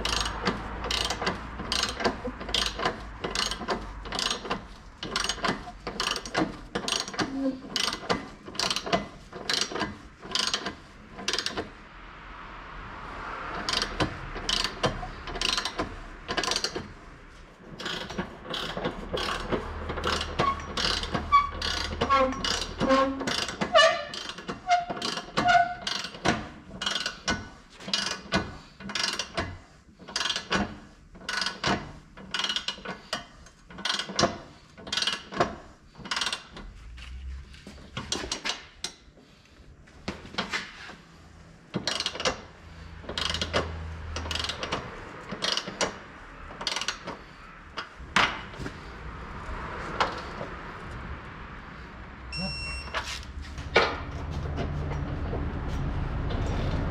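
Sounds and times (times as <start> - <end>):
ratchet wrench clicking: 0.0 - 11.7, 13.6 - 16.9, 17.8 - 29.5, 30.1 - 30.7, 31.3 - 33.2, 33.8 - 36.6, 41.8 - 42.4, 43.0 - 46.0, 46.6 - 47.9.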